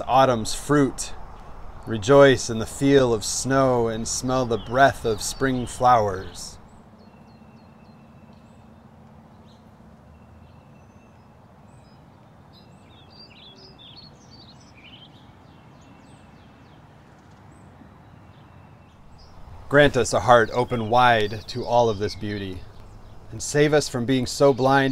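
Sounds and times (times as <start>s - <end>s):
birds singing and chirping: 0.0s - 24.9s
low outdoor background noise: 0.0s - 24.9s.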